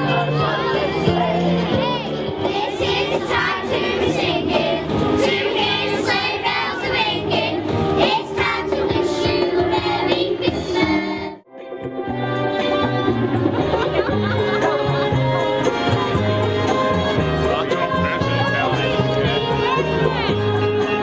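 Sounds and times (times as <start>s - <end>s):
choir singing: 0.0s - 11.4s
steady musical accompaniment: 0.0s - 21.0s.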